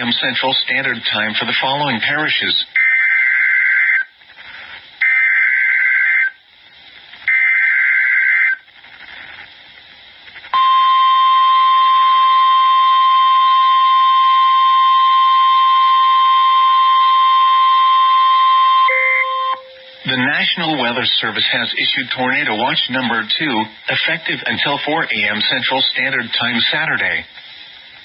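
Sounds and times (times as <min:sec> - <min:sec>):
radio hiss: 0:00.0 - 0:28.0
steady warning alarm tone: 0:10.6 - 0:20.9.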